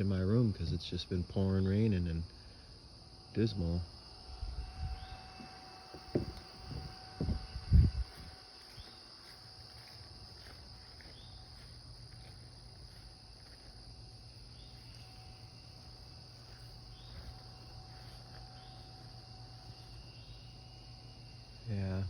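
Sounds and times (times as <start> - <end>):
insects chorus: 0.0 - 22.0
dull thumps: 5.9 - 7.5.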